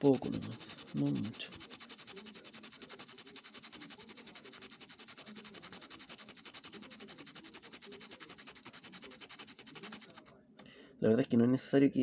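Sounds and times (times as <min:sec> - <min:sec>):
solder scraping on sandpaper: 0:00.0 - 0:10.3.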